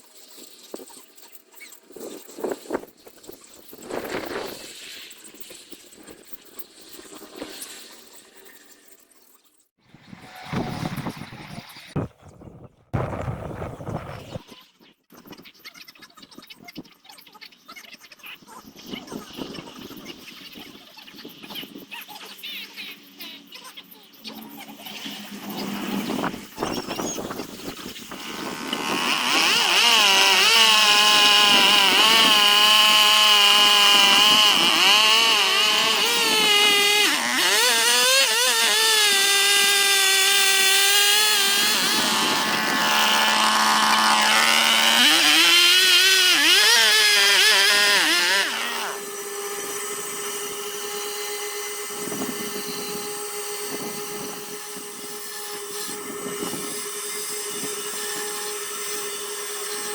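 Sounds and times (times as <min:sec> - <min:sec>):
rotary tool cutting into wood: 0:10.1 - 0:12.4, 0:25.0 - 0:59.9.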